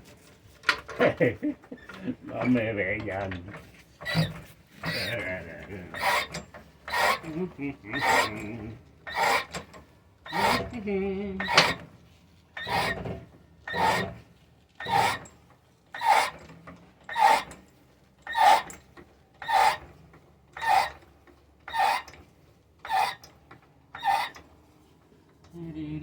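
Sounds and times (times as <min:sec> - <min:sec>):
rhythmic rasping strokes: 0:04.0 - 0:09.7, 0:10.3 - 0:11.8, 0:12.6 - 0:13.1, 0:13.7 - 0:14.2, 0:14.8 - 0:15.2.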